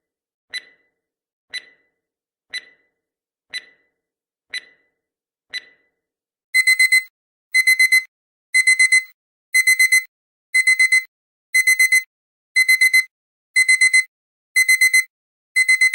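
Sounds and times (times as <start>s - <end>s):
timer ticking: 0.5s - 4.9s, 5.5s - 5.9s, 6.6s - 15.9s
digital alarm beeping: 6.6s - 15.9s.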